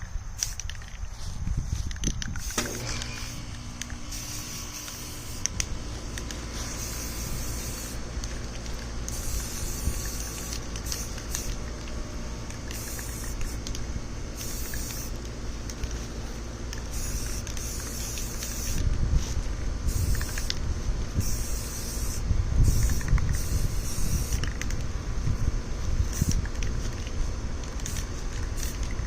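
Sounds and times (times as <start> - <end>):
spray can hissing: 0.4 - 24.8, 26.0 - 29.0.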